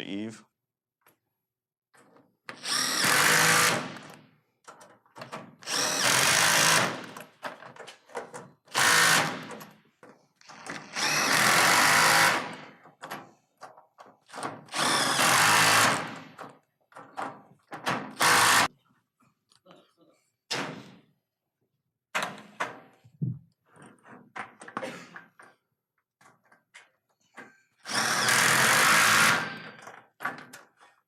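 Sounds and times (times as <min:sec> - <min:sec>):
cordless drill running: 0:02.6 - 0:04.1, 0:05.6 - 0:07.1, 0:08.7 - 0:09.4, 0:10.5 - 0:12.6, 0:14.7 - 0:16.2, 0:18.2 - 0:18.7, 0:27.8 - 0:29.7
small clicks and knocks: 0:04.6 - 0:05.4.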